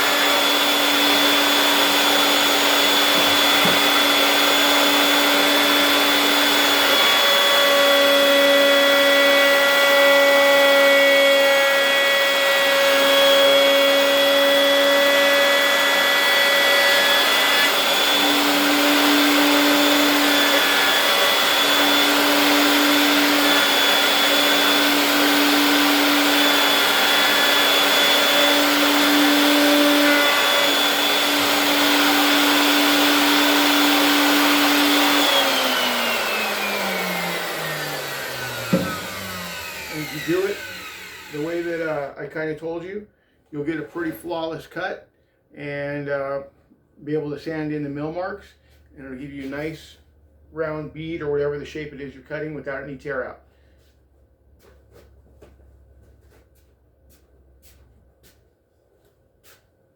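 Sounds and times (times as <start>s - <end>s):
router high-pitched whine: 0.0s - 42.1s.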